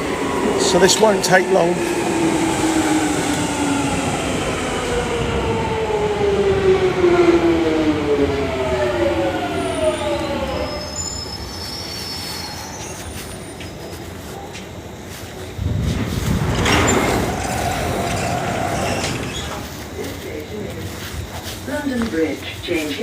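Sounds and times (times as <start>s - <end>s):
train motor whine: 0.0s - 14.0s, 15.4s - 20.1s
train brake squeals: 9.6s - 14.2s.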